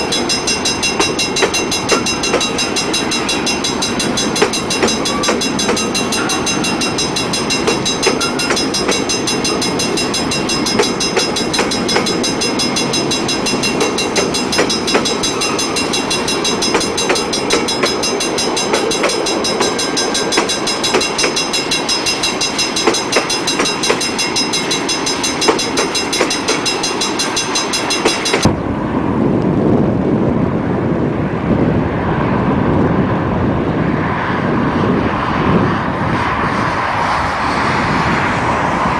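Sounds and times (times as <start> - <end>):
train wheels clicking over rail joints: 0.0 - 28.6.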